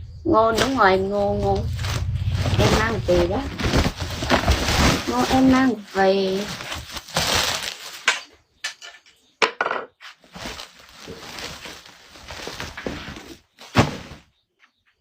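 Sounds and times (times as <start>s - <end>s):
rustling and crackling handling: 1.4s - 8.8s, 10.0s - 14.2s.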